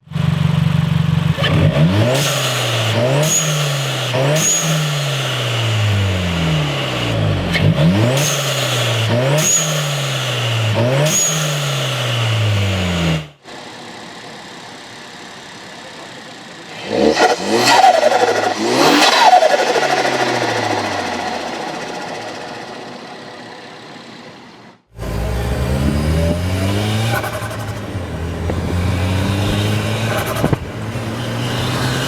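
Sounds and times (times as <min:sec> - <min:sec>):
turbocharged car engine revving: 0:00.0 - 0:32.0
turbo and blow-off valve chirps: 0:02.2 - 0:13.2.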